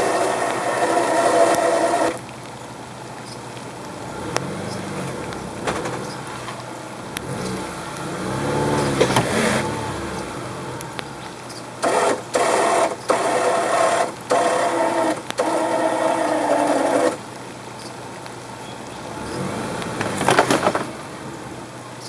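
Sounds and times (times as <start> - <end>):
electric winch motor whining: 0.0 - 2.2, 11.8 - 17.2
vehicle engine revving: 0.0 - 2.3, 3.2 - 17.3, 18.8 - 22.0.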